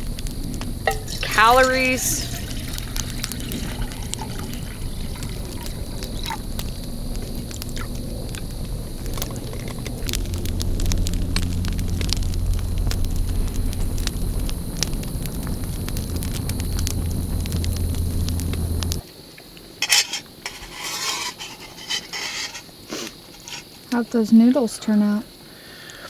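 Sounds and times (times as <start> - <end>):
steady low rumble: 0.0 - 1.5, 2.2 - 19.0
campfire crackling and popping: 0.0 - 24.7.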